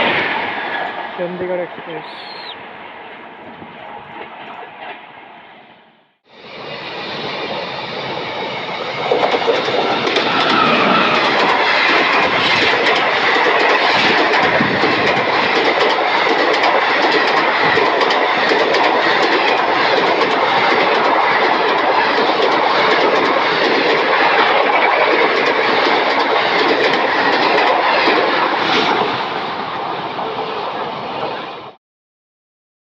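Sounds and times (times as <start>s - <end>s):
train passing at speed: 0.0s - 31.8s
wheels clacking over rail joints: 8.8s - 30.4s.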